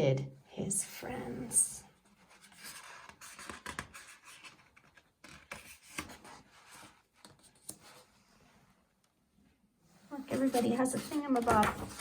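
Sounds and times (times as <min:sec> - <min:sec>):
book pages rustling: 0:02.0 - 0:08.2, 0:10.0 - 0:12.0.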